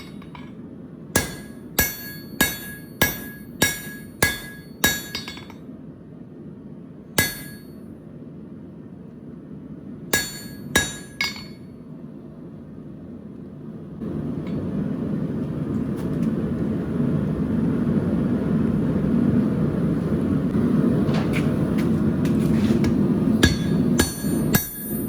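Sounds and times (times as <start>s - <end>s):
hammer striking steel on anvil: 1.2s - 5.6s, 7.2s - 7.8s, 10.1s - 11.7s, 22.8s - 25.0s.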